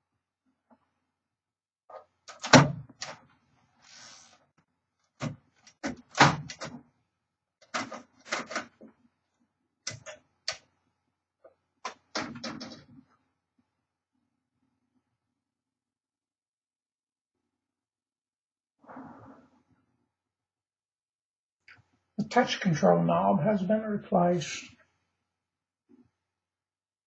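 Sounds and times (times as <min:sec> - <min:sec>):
typewriter clunks and clacks: 0:02.3 - 0:03.1.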